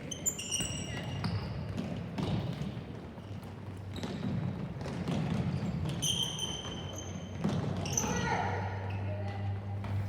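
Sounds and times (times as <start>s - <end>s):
ball bouncing on hard floor: 3.9s - 7.9s.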